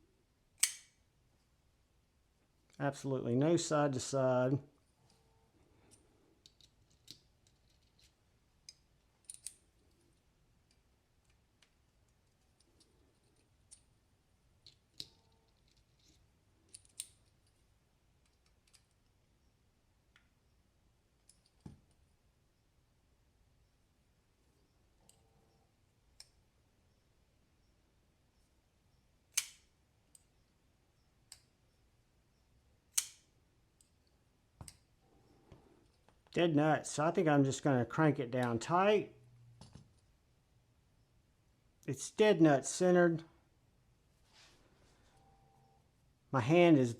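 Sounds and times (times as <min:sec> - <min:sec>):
light knife handling clicks: 0:00.6 - 0:01.0, 0:29.3 - 0:30.3, 0:32.9 - 0:34.0.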